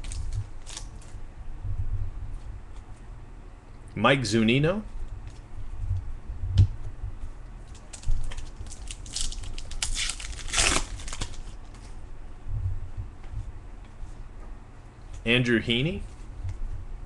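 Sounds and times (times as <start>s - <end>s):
plastic wrapping crinkling: 0.0s - 1.2s, 7.7s - 12.0s.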